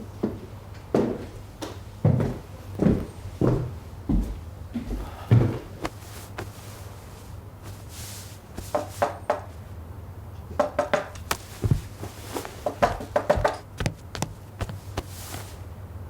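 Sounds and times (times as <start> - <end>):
light irregular taps and knocks: 10.6 - 15.6.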